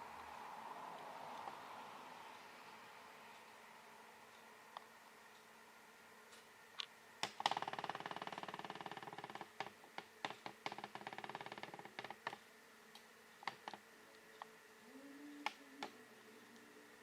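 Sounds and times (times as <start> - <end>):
faint steady hum: 0.0 - 17.0
rattling ticks: 7.2 - 12.5.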